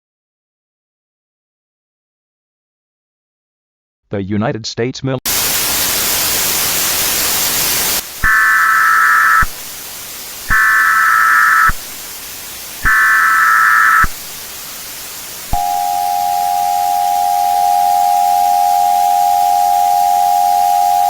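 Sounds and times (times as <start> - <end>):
static: 5.3 - 21.0
two-tone attention signal: 8.2 - 9.5, 10.5 - 11.8, 12.8 - 14.1, 15.6 - 21.0
data bursts: 8.2 - 14.9, 15.5 - 21.0.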